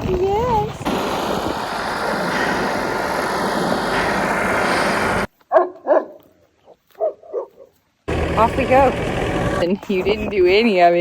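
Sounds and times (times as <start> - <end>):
steady rushing noise: 0.0 - 5.3
dog barks: 5.5 - 7.8.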